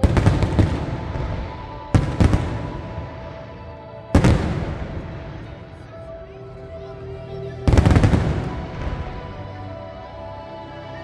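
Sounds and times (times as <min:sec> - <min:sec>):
fireworks bursting: 0:00.0 - 0:06.4, 0:07.7 - 0:09.6
music with held notes: 0:00.0 - 0:11.0.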